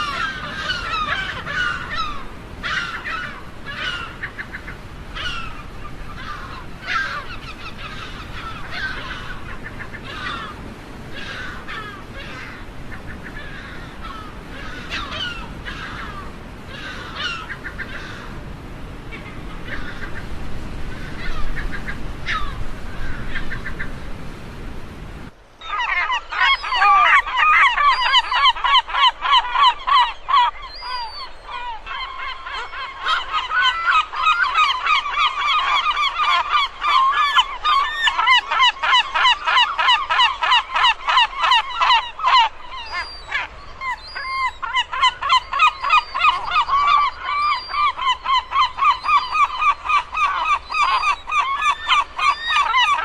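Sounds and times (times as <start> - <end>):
scattered bird calls: 0.0 - 18.5, 19.1 - 24.0, 25.6 - 53.0
dense chorus of birds calling: 0.0 - 24.0, 25.6 - 53.0
outdoor background noise: 0.0 - 53.0.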